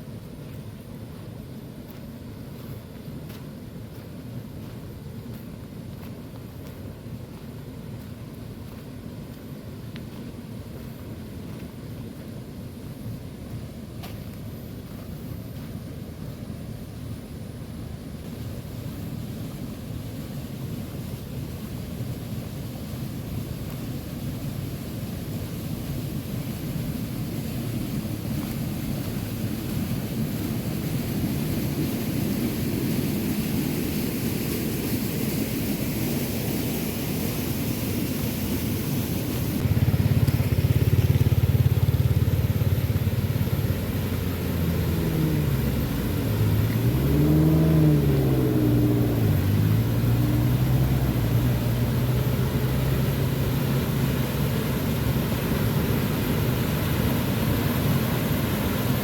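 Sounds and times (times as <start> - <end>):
steady low rushing noise: 15.4 - 59.0
vehicle engine revving: 39.6 - 58.8.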